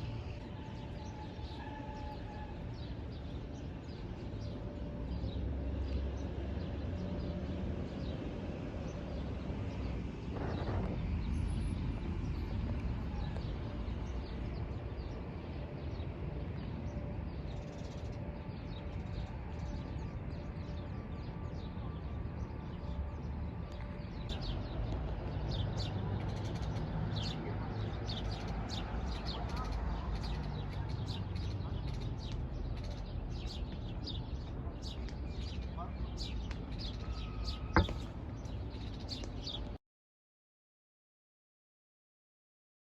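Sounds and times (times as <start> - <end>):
birds chirping: 25.5 - 39.8.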